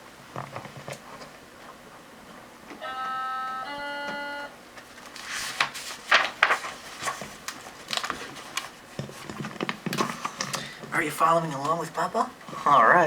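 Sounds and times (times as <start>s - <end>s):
two-note electronic chime: 2.8s - 4.6s
paper rustling as page turns: 4.8s - 10.4s.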